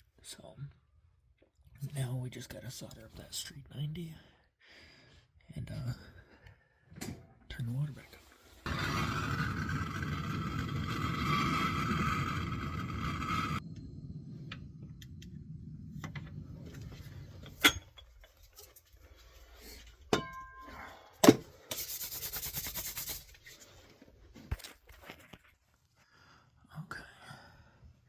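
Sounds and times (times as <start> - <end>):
quick rubbing strokes: 21.7 - 23.7.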